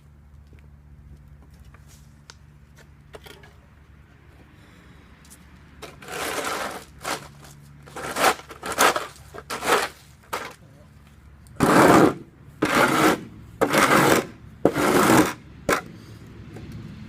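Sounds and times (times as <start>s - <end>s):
hand tool scraping concrete: 5.8s - 10.6s, 11.6s - 16.0s.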